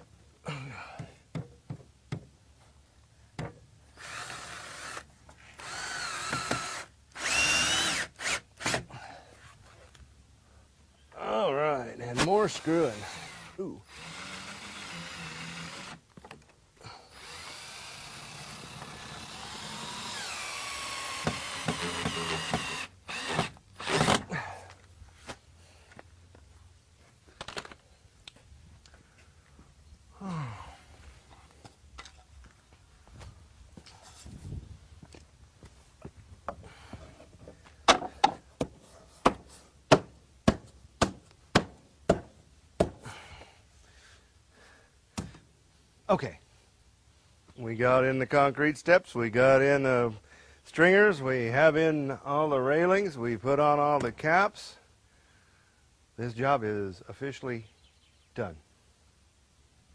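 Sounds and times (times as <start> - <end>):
power drill driving screws: 4.0 - 8.9, 12.5 - 16.0, 17.1 - 24.3
hammering on wood: 37.9 - 43.0.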